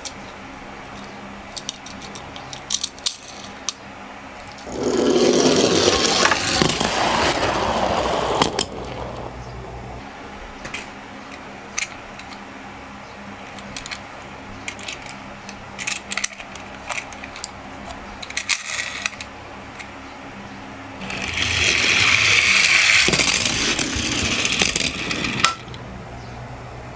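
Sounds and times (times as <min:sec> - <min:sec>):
toy cars rolling rattle: 0:00.9 - 0:03.8, 0:04.4 - 0:10.0, 0:14.7 - 0:19.9, 0:21.0 - 0:25.8.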